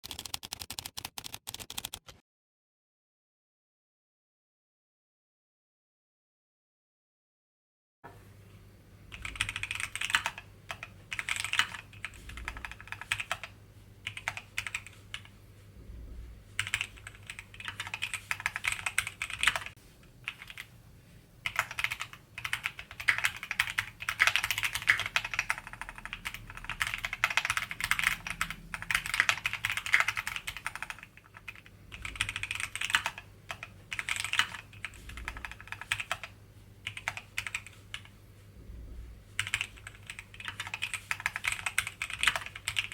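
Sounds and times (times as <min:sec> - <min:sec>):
mechanical keyboard typing: 0:00.0 - 0:02.2, 0:09.1 - 0:15.3, 0:16.6 - 0:20.7, 0:21.4 - 0:38.1, 0:39.4 - 0:42.9.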